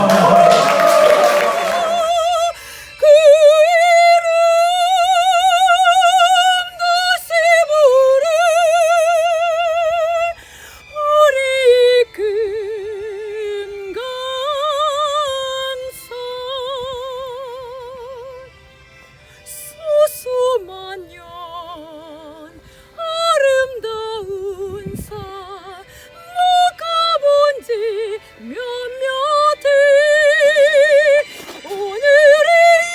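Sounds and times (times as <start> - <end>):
soprano singing operatic phrase: 0.0 - 2.5.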